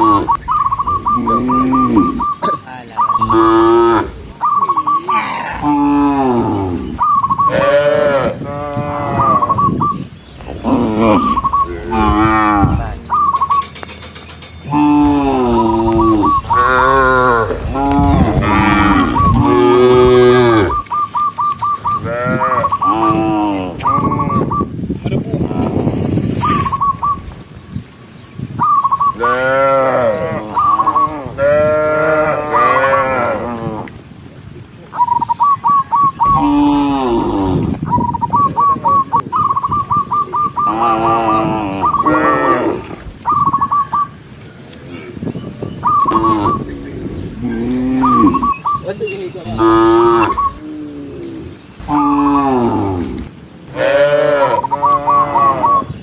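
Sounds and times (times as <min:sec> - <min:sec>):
high chirping notes: 0:00.0 - 0:08.0, 0:09.0 - 0:24.8, 0:45.2 - 0:56.0
cattle mooing: 0:01.1 - 0:02.4, 0:03.2 - 0:04.3, 0:07.5 - 0:09.6, 0:10.4 - 0:13.1, 0:14.7 - 0:20.9, 0:21.9 - 0:24.5, 0:29.2 - 0:33.9, 0:36.2 - 0:37.8, 0:40.6 - 0:43.0, 0:46.0 - 0:48.6, 0:49.4 - 0:55.9.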